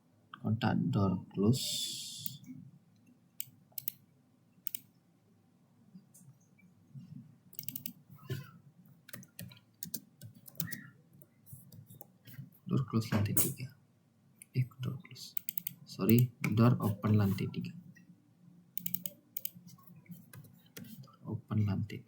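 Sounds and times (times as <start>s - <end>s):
mouse and keyboard clicks: 3.4s - 4.0s, 4.6s - 4.9s, 7.6s - 8.4s, 9.1s - 10.9s, 15.4s - 17.4s, 18.8s - 21.0s.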